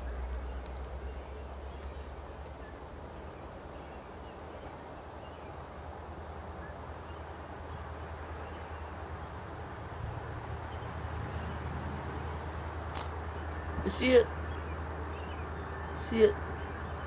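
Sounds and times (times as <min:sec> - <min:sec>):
low outdoor rumble and hiss: 0:00.0 - 0:17.0.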